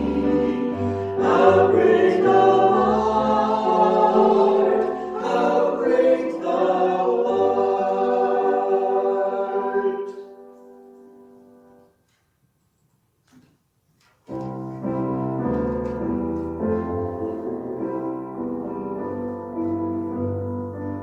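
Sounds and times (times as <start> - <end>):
choir singing: 0.0 - 10.6.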